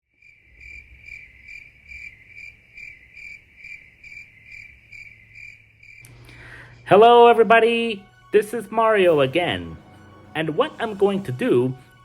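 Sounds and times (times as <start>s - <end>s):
insect chirping: 0.1s - 6.6s.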